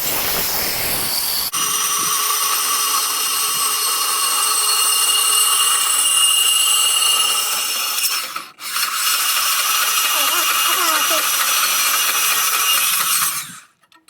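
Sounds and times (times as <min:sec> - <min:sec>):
band saw cutting steel: 0:00.0 - 0:13.7.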